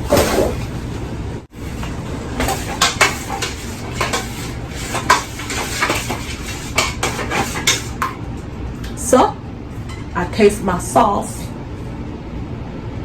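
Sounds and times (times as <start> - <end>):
metal spoon scraping cooking pot: 1.6 - 8.2.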